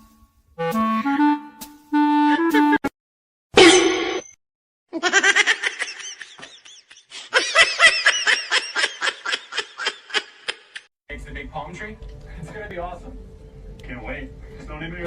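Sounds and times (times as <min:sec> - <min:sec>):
person laughing hard: 0:05.0 - 0:10.9.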